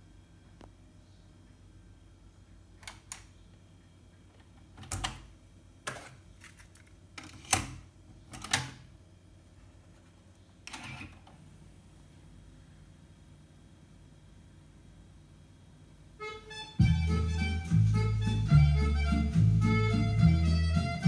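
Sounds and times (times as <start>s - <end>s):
cassette deck clicks and clunks: 4.4s - 5.3s, 5.9s - 8.9s.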